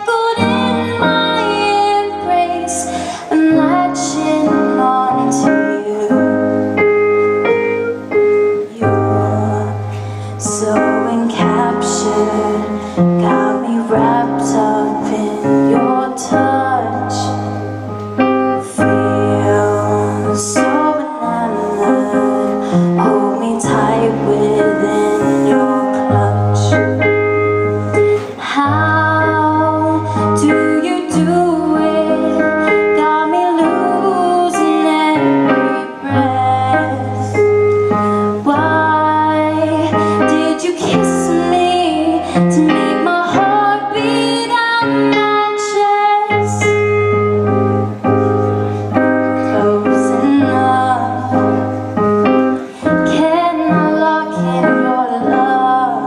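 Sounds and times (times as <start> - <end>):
instrumental pop music: 0.0 - 56.0.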